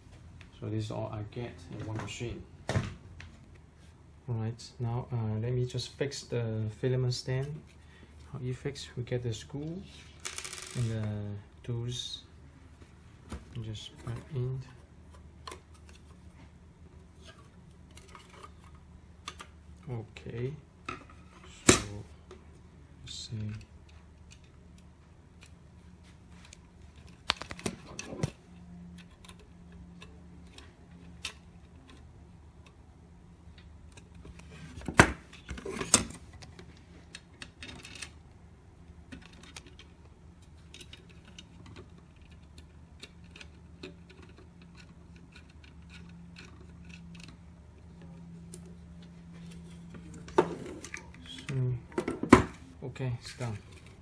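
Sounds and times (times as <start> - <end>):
small parts clicking and clattering: 10.1 - 11.0, 35.4 - 38.2, 39.0 - 47.5.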